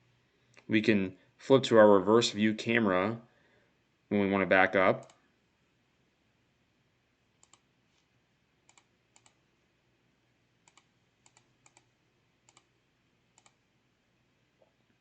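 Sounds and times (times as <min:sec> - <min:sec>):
room hiss: 0:00.0 - 0:15.0
computer mouse clicks: 0:05.0 - 0:05.2, 0:07.4 - 0:07.7, 0:08.7 - 0:09.4, 0:10.6 - 0:11.9, 0:12.5 - 0:12.7, 0:13.4 - 0:13.6.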